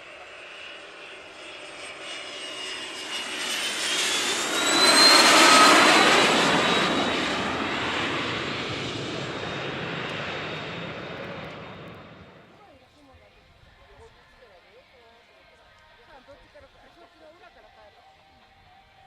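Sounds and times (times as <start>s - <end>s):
jet flying past: 0.0s - 12.7s.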